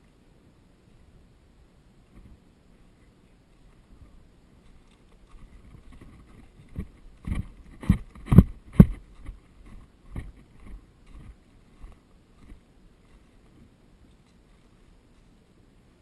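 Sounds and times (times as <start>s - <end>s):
thumps: 5.8s - 12.6s.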